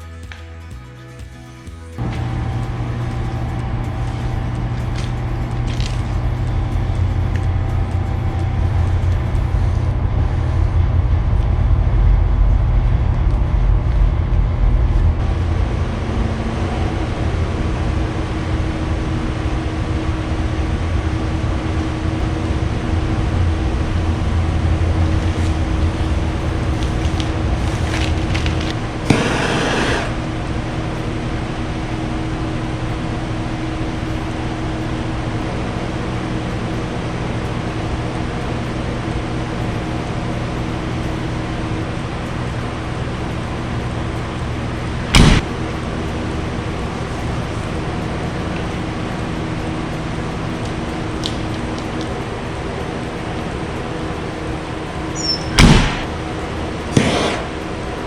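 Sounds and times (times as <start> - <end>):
mechanical hum with low rumble: 1.9 - 58.0
hiss: 29.0 - 30.2, 56.9 - 57.6
sharp click: 45.2 - 45.4.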